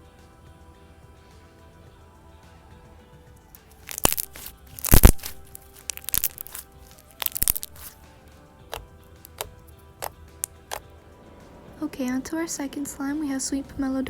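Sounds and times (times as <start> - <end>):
soft background music: 0.0 - 14.0
slime crackling pops: 3.8 - 8.0.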